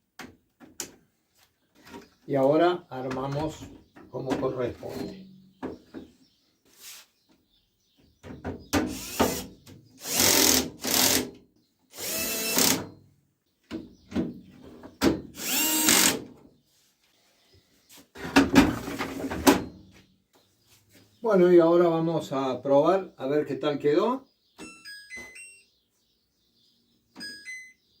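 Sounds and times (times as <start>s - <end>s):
electric screwdriver driving screws: 8.9s - 11.3s, 12.0s - 12.8s, 15.4s - 16.2s.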